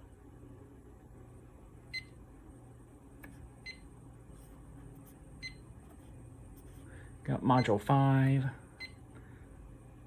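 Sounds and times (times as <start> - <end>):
faint steady hum: 0.0 - 10.0
keypad key-press beeps: 1.9 - 2.1, 3.6 - 3.8, 5.4 - 5.6.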